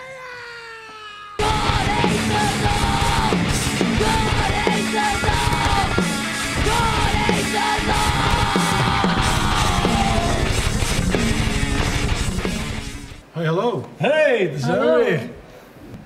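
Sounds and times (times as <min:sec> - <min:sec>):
thrash metal band playing: 0:01.4 - 0:13.2.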